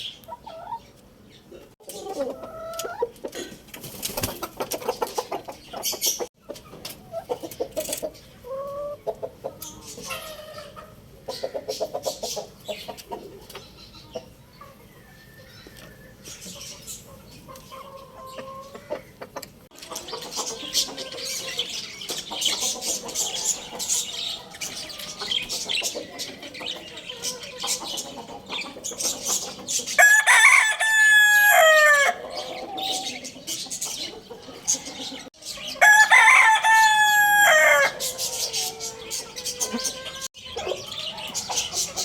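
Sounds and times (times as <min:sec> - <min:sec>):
bird calls: 0:00.0 - 0:30.6, 0:31.6 - 0:36.1, 0:36.8 - 0:42.0
chicken clucking: 0:00.0 - 0:42.0
rooster crowing: 0:30.0 - 0:32.4, 0:35.8 - 0:40.3.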